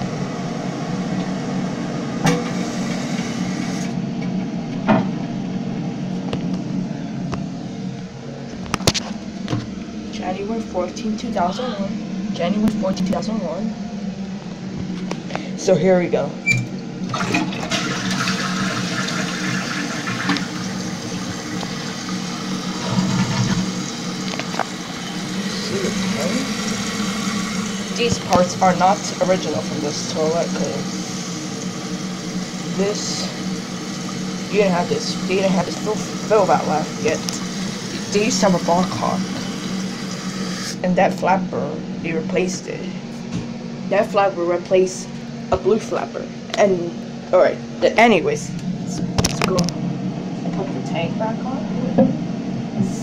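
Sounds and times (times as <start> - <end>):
water running into toilet tank: 0.0 - 4.0, 16.8 - 41.3
low hum: 0.0 - 18.1, 18.8 - 53.0.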